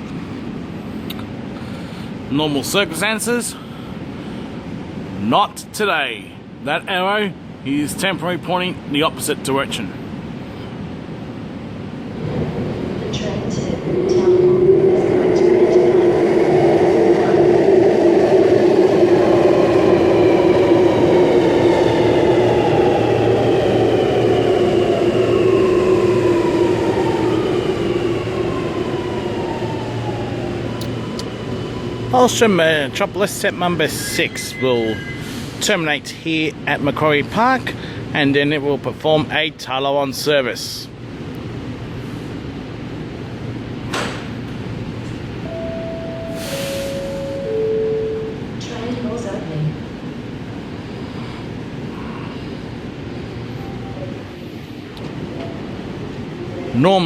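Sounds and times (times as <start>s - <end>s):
train low hum: 0.0s - 57.0s
train braking to a stop: 33.7s - 35.8s, 45.4s - 49.2s
door chime tones: 45.5s - 48.4s
short air hiss: 46.3s - 47.2s.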